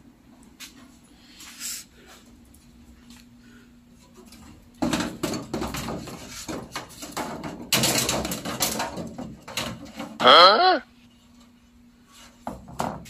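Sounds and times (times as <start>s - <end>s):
hard objects clattering: 4.1s - 10.4s.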